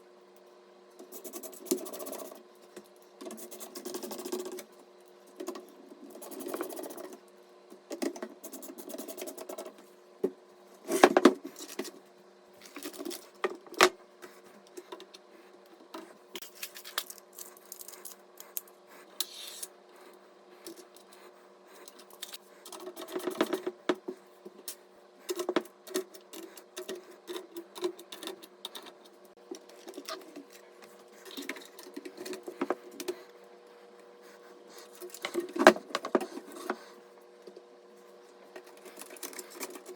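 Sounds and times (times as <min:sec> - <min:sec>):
faint steady hum: 0:00.0 - 0:39.9.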